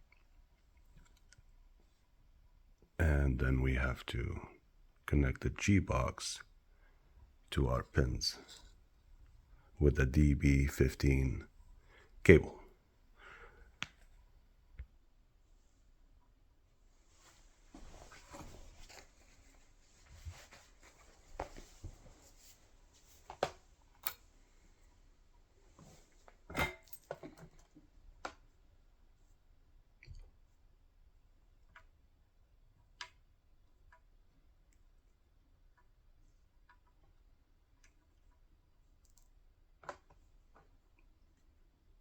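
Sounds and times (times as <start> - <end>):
cables and small parts clicking: 37.8 - 41.5.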